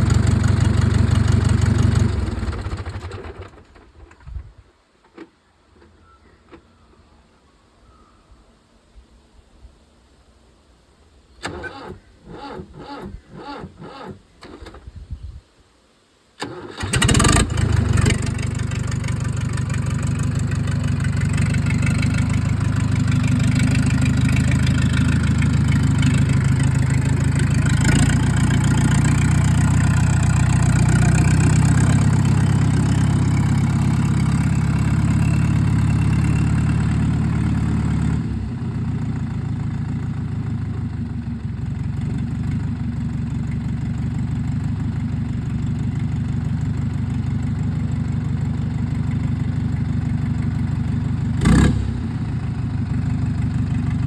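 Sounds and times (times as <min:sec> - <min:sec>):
tractor diesel engine running: 0:00.0 - 0:03.6, 0:11.4 - 0:14.1, 0:16.4 - 0:54.0
starter motor cranking engine: 0:00.0 - 0:03.9, 0:11.4 - 0:14.8, 0:16.4 - 0:38.1.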